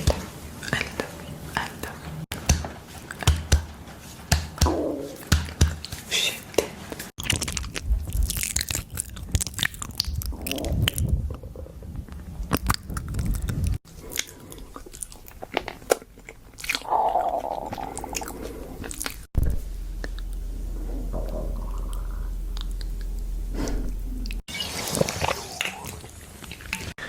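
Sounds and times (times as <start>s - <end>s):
chewing crunchy food: 7.2s - 11.2s, 12.0s - 19.4s.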